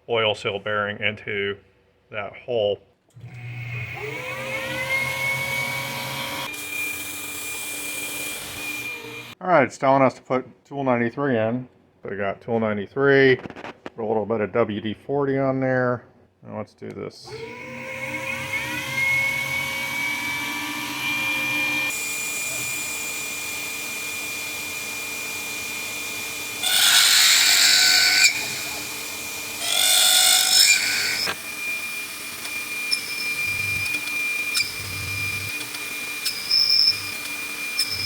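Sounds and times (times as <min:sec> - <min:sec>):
drill bit drilling: 0:03.3 - 0:09.4, 0:17.3 - 0:38.0
mill spindle whine: 0:17.3 - 0:38.0.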